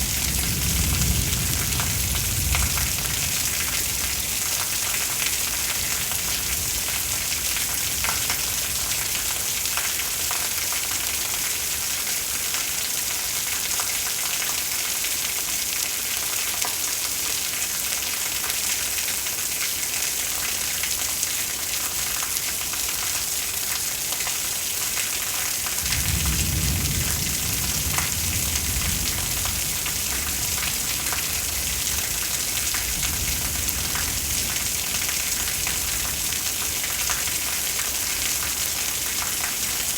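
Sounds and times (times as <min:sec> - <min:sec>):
low rumble of thunder: 0:00.0 - 0:09.3, 0:25.8 - 0:39.9
heavy rain hissing: 0:00.0 - 0:09.6.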